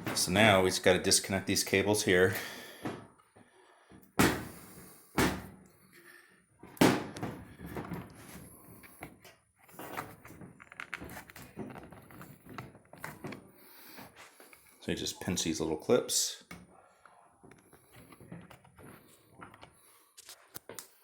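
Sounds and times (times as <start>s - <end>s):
plastic connectors clicking and rattling: 9.9s - 13.2s.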